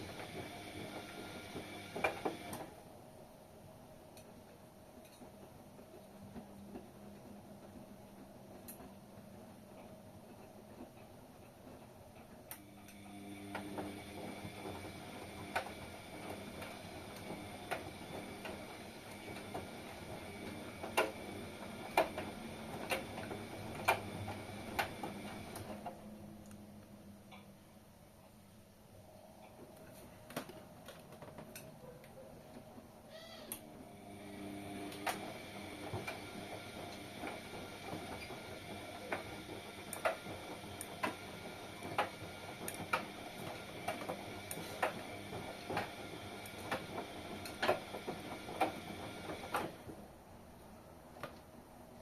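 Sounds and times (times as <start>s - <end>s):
washing machine motor hum: 0.0s - 27.4s, 31.5s - 52.0s.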